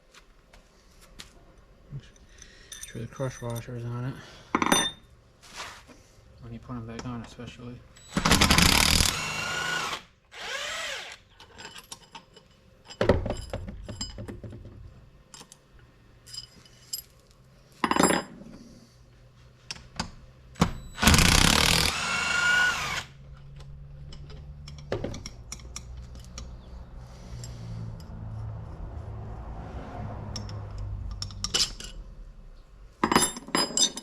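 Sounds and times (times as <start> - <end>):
power drill motor whine: 8.0 - 11.2, 21.0 - 23.2.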